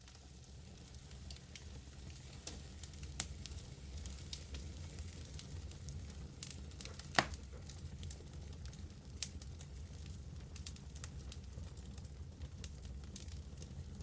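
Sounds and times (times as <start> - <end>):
fire crackles: 0.0 - 14.0
wood fire burning: 0.0 - 14.0
loud wood pops: 7.1 - 7.4.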